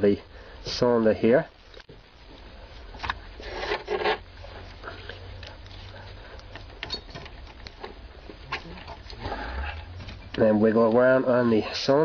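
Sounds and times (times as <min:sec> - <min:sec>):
steady low hum: 0:00.0 - 0:12.0
wire scraping and clicking in lock: 0:06.4 - 0:09.2.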